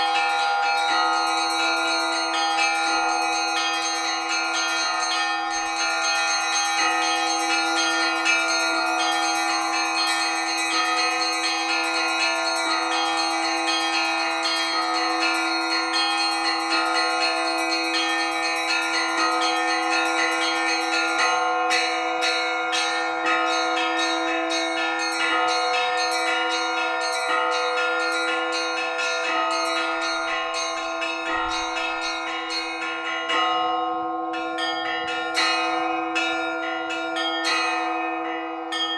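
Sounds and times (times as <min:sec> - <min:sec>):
hum of large bells: 0:00.0 - 0:38.9
small bells struck quickly: 0:00.0 - 0:38.9.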